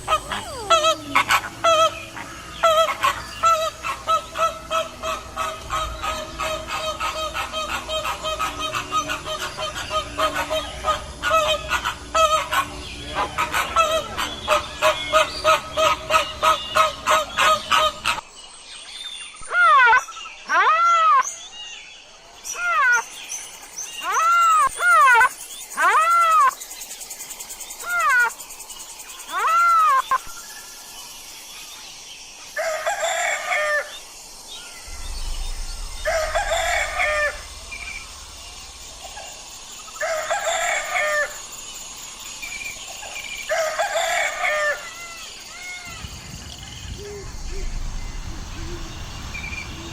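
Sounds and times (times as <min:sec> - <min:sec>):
rooster crowing: 0:00.0 - 0:01.6
rising and falling fowl calls: 0:00.0 - 0:18.2.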